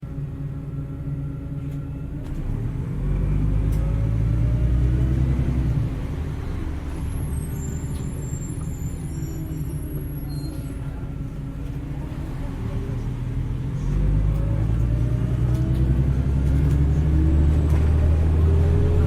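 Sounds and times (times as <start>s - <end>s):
bus engine humming: 0.0s - 19.0s
faint high squeals: 7.0s - 11.0s.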